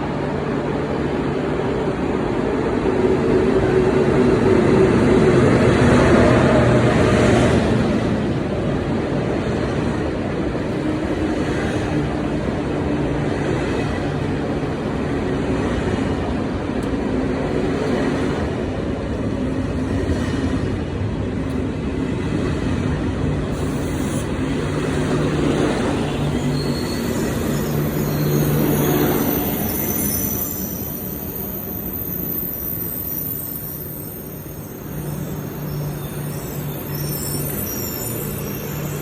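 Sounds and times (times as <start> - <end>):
train wheels rumbling on rail: 0.0 - 39.0
high-pitched squealing tones: 25.8 - 39.0.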